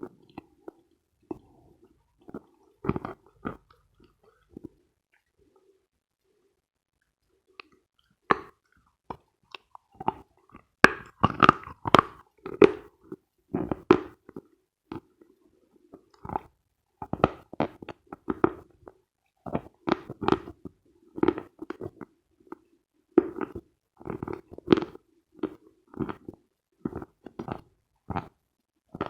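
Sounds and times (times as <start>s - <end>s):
chalk crunching as chewed: 7.6s - 15.3s, 15.9s - 28.4s.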